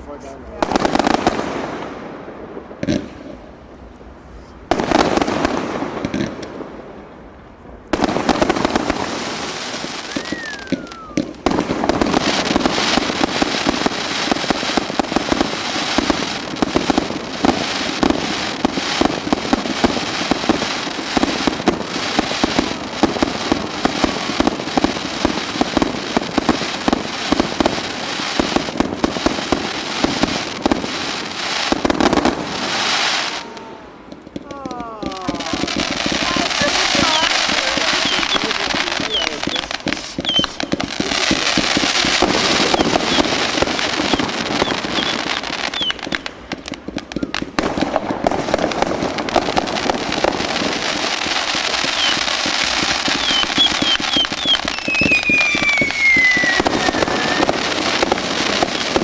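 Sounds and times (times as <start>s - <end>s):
fireworks bangs and crackling: 0.0s - 59.0s
falling firework whistle: 9.8s - 11.6s, 37.0s - 40.8s, 42.4s - 46.3s, 51.8s - 59.0s.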